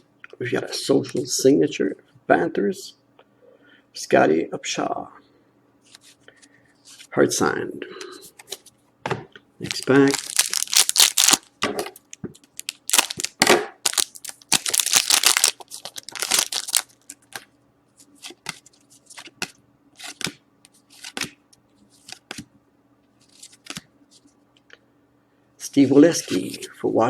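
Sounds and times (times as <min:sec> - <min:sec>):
wrapper tearing and crinkling: 0:09.6 - 0:17.4
cards clicking and sliding: 0:18.2 - 0:21.4, 0:22.0 - 0:22.5.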